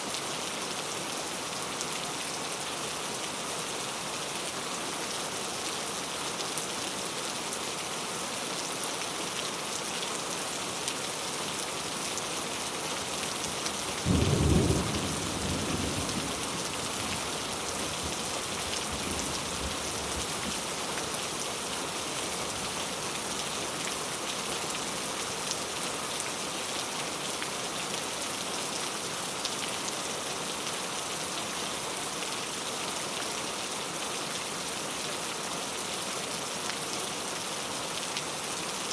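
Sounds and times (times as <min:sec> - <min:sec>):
heavy rain: 0:00.0 - 0:38.9
thunder clap rumbling: 0:14.1 - 0:17.1.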